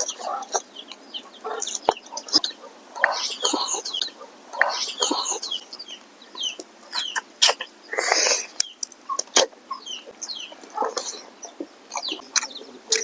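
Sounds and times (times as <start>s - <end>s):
chickens clucking: 0.0s - 13.0s
harsh bird call: 0.0s - 13.0s
small birds chirping: 0.0s - 13.0s
sharp clicks: 8.1s - 9.4s.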